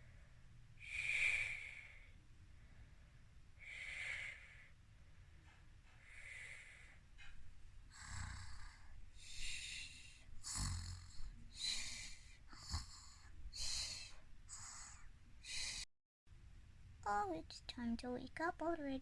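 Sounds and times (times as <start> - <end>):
person pretend snoring: 7.9 - 15.0.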